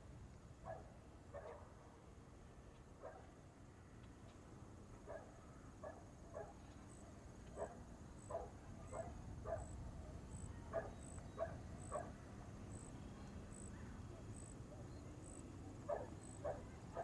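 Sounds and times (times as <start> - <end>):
dog barking: 0.7 - 1.7, 3.0 - 3.3, 5.1 - 6.6, 7.6 - 9.7, 10.7 - 12.2, 15.9 - 17.0.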